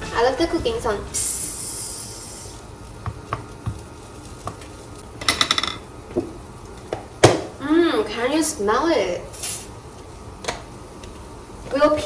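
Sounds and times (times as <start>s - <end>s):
mushrooms sizzling in a frying pan: 0.0s - 12.0s
utensil knocking against a pan: 3.0s - 3.8s.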